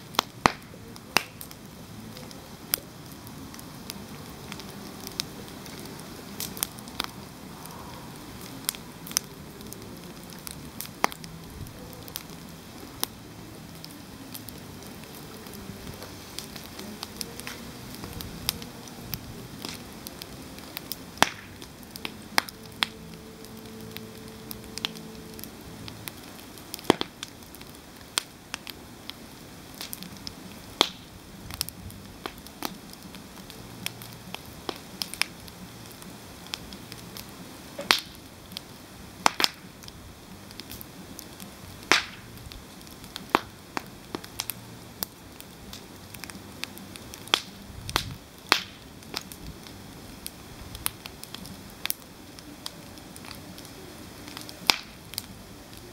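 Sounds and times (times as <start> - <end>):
campfire wood popping and cracking: 0.0 - 55.9
low steady fire hiss: 0.0 - 55.9.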